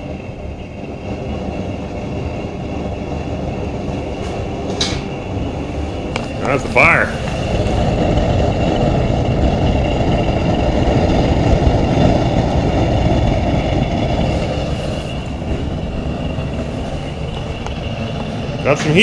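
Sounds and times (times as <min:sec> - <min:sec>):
propane heater burning: 0:00.0 - 0:19.0
faint high steady tones: 0:13.4 - 0:19.0.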